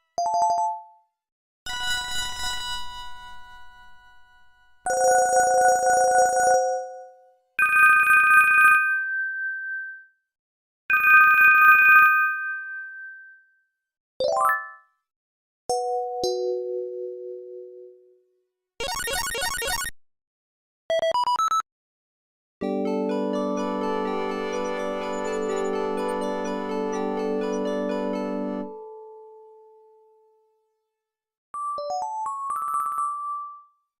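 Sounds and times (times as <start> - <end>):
phone ringtone: 23.6 - 28.5
two-note alert tones: 23.6 - 28.7.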